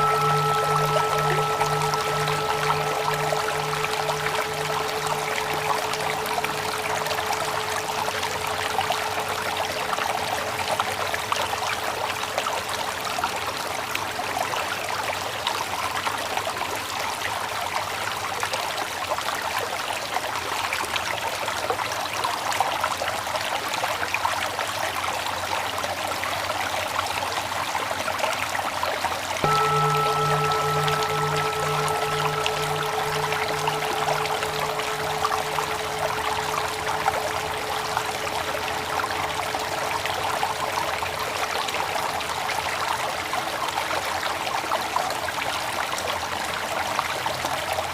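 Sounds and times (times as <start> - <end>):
meditation bell hum: 0.0 - 12.8, 29.4 - 43.4
stream flowing: 0.0 - 12.9, 29.4 - 43.9.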